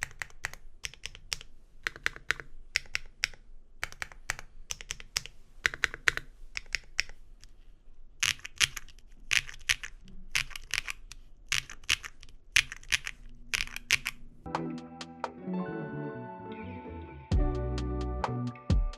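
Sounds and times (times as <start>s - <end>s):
mechanical keyboard typing clacks: 0.0s - 7.2s, 8.2s - 14.2s
music: 14.5s - 18.9s.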